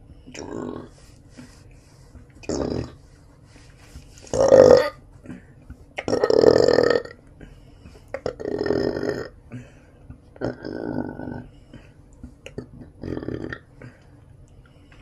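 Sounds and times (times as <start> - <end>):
person burping: 4.3 - 5.4, 6.0 - 7.2, 8.2 - 9.3, 10.4 - 11.5, 12.5 - 14.0.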